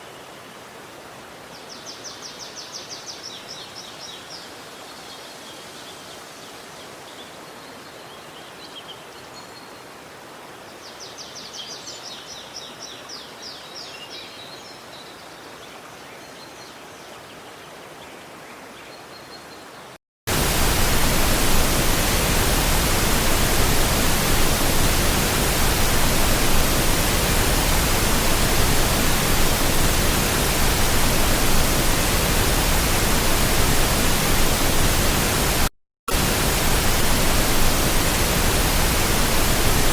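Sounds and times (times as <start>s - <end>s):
loud steady hiss: 20.3s - 39.9s.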